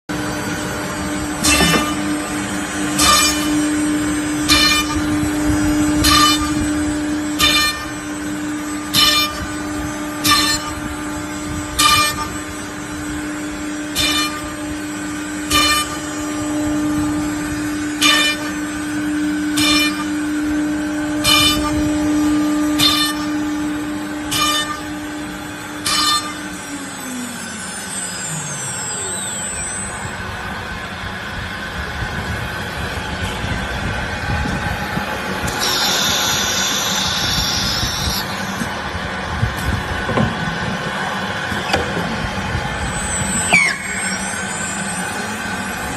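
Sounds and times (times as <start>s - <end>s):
router spindle whine: 0.1s - 45.9s
short harsh cutting bursts: 35.5s - 38.6s.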